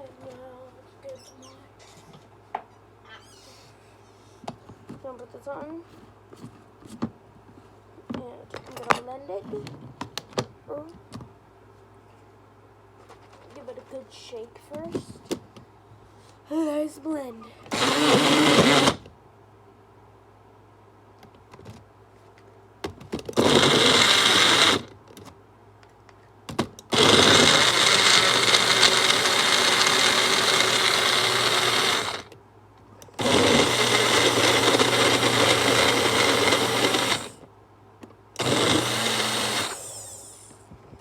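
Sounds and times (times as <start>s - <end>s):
blender motor whining: 17.7s - 19.0s, 23.4s - 24.9s, 26.9s - 32.3s, 33.1s - 37.4s, 38.4s - 40.6s.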